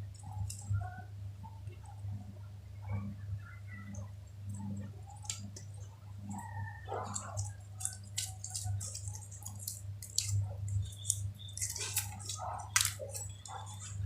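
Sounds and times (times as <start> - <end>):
steady low hum: 0.0 - 14.0
slime squishing with wet clicks: 0.1 - 1.0, 6.8 - 14.0.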